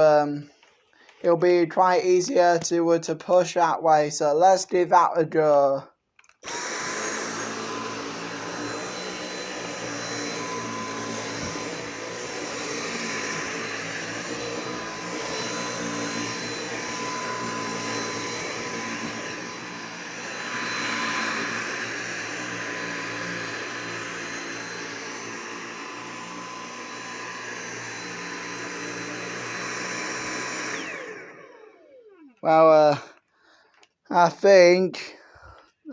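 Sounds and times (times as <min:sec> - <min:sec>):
vacuum cleaner running: 0:06.4 - 0:33.0.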